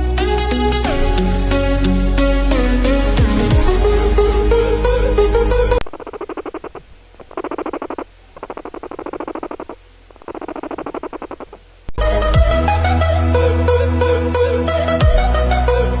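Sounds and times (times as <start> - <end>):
background music: 0.0 - 5.8, 12.0 - 16.0
guinea pig calling: 5.8 - 11.6.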